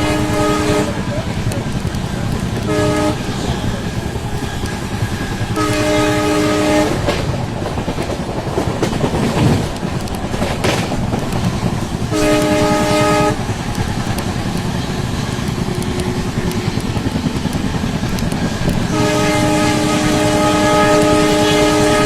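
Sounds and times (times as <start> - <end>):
locomotive horn blasts: 0.0 - 1.3, 2.6 - 7.2, 12.1 - 13.5, 18.9 - 22.0
train running noise: 0.0 - 22.0.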